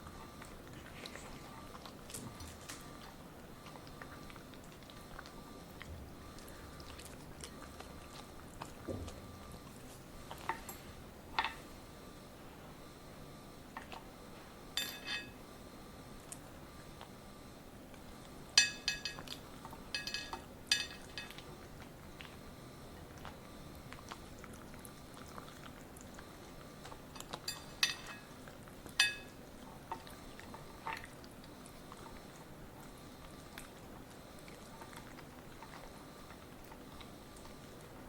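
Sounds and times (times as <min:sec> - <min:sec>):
dog chewing softly: 0:00.0 - 0:11.0, 0:21.2 - 0:38.0.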